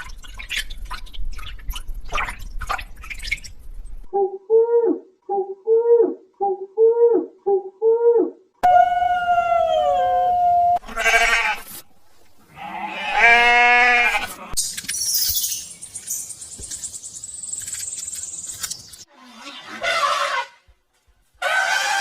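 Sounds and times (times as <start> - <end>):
long animal call falling in pitch: 4.1 - 11.2.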